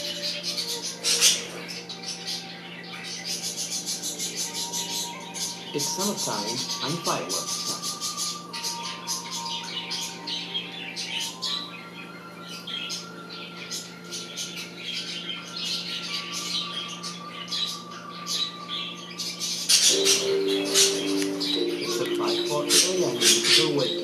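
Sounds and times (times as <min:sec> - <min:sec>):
budgerigars chattering: 0:00.2 - 0:08.5, 0:14.2 - 0:24.0.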